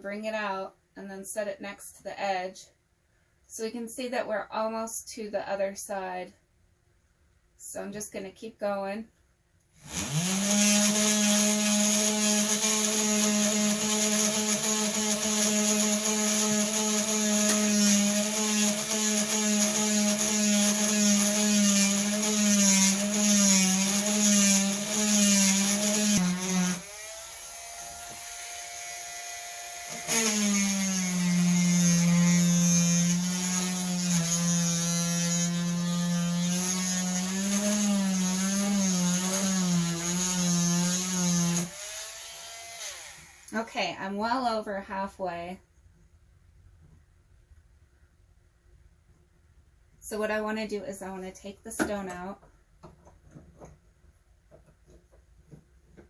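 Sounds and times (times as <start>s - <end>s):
rotary tool drilling into stone: 9.8s - 43.6s.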